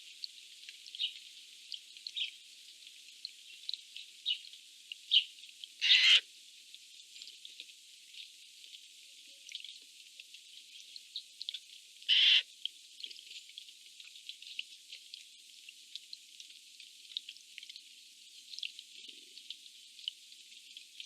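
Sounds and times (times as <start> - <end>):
faint bird chirps: 5.1 - 6.2, 12.1 - 12.4
jay screeching: 5.8 - 6.2, 12.1 - 12.4.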